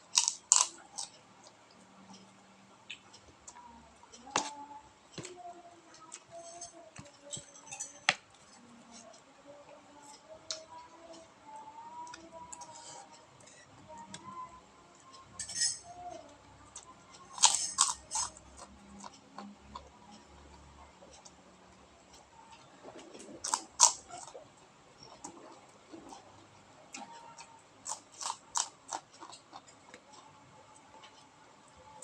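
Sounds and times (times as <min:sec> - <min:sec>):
crunching of crackers: 0:00.1 - 0:01.2, 0:23.4 - 0:24.4, 0:27.8 - 0:30.2
spoon clinking against a plate: 0:06.3 - 0:08.2, 0:15.3 - 0:16.0, 0:17.3 - 0:18.4.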